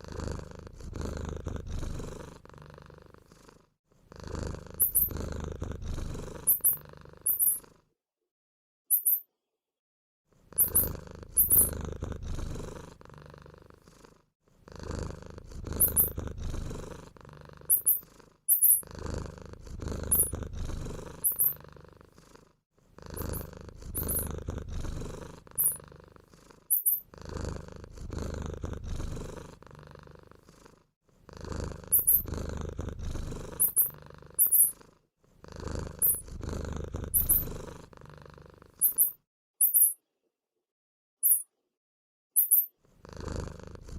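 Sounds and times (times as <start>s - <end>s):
purring rumble: 0.0s - 7.4s, 10.5s - 38.8s, 42.9s - 43.9s
high-pitched squeaks: 17.7s - 18.8s, 26.7s - 27.0s, 32.0s - 32.2s, 38.8s - 40.0s, 42.4s - 42.7s.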